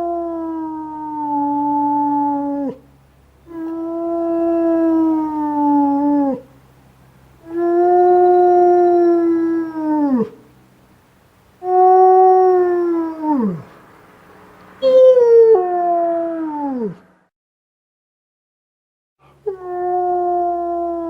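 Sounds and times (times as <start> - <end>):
wolf howling: 3.5 - 6.5, 7.4 - 10.4, 11.6 - 13.7.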